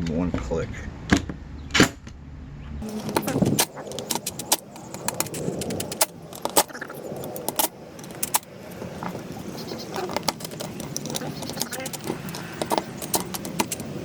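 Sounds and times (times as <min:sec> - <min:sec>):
clattering of small tools and parts: 0:02.8 - 0:14.0.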